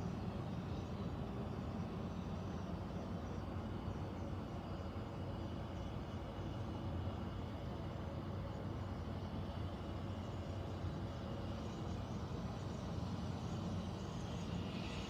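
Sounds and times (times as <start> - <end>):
air conditioning hum: 0.0 - 15.0.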